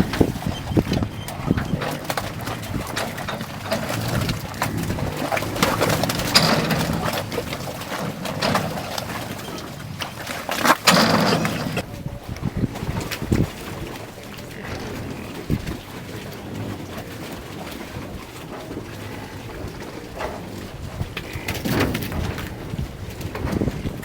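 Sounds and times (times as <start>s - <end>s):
low animal sounds: 0.0s - 22.7s
hooves clattering: 0.0s - 24.0s
loud knocks: 10.6s - 11.8s.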